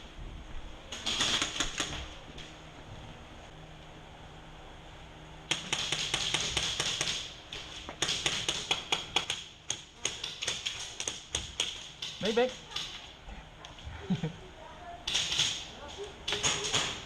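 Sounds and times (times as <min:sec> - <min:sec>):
airsoft guns firing bursts: 0:01.0 - 0:02.0.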